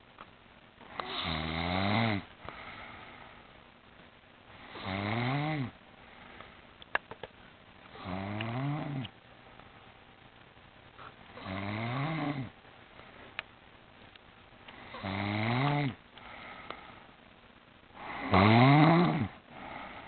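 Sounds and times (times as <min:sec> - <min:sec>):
woman snoring: 0:00.9 - 0:02.9, 0:04.7 - 0:05.8, 0:08.0 - 0:09.1, 0:11.4 - 0:12.5, 0:14.9 - 0:16.5, 0:18.0 - 0:20.0.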